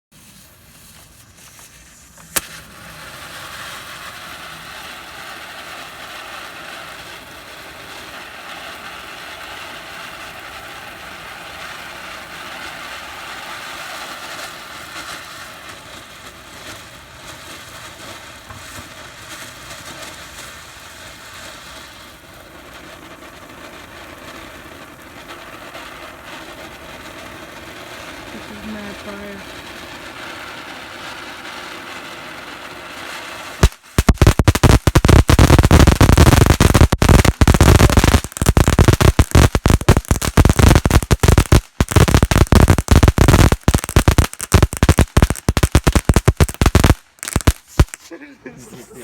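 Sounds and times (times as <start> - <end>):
firework fountain hissing: 0.1 - 49.0
sharp pop: 2.2 - 2.6, 33.6 - 35.6.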